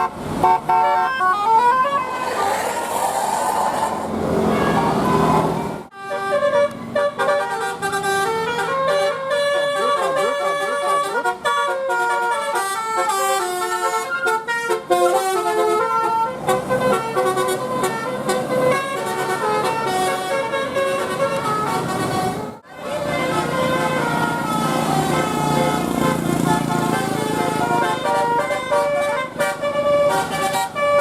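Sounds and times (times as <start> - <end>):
bus air horn playing a tune: 0.0 - 2.9, 4.4 - 31.0.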